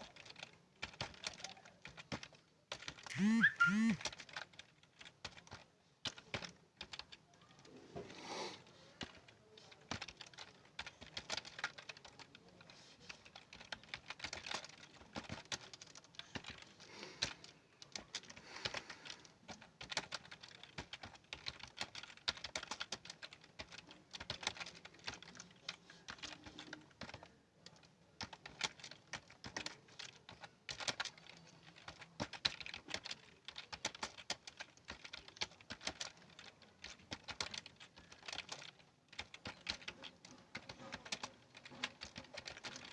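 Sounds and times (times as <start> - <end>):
keyboard key clicks: 3.1 - 4.0.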